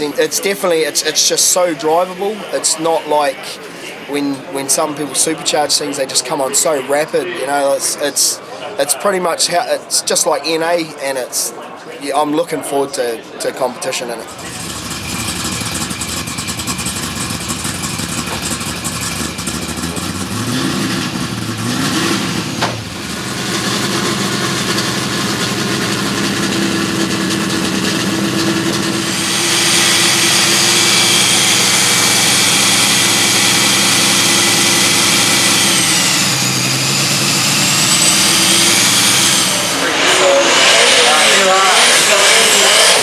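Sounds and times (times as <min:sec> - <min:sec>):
car engine revving: 0:14.2 - 0:43.0
high-pitched supercharger whine: 0:14.3 - 0:43.0.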